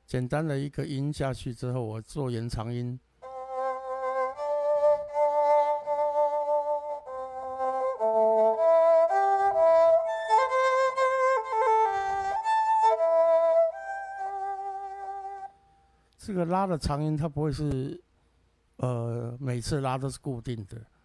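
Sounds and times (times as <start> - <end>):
synthesized erhu melody: 3.2 - 15.6.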